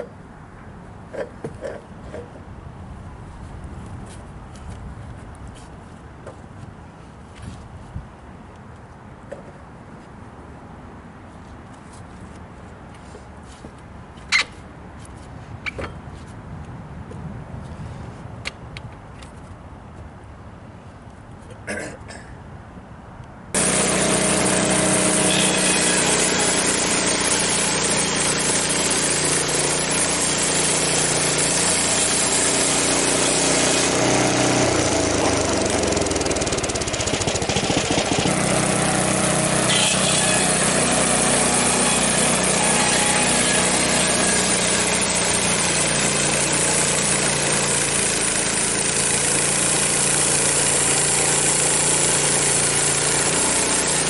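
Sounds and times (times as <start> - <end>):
sawmill gasoline engine running: 23.6 - 54.0.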